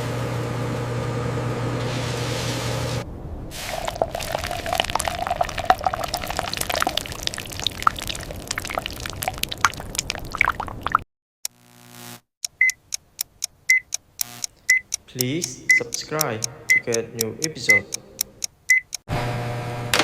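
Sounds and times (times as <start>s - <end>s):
small items pouring: 3.5s - 10.4s.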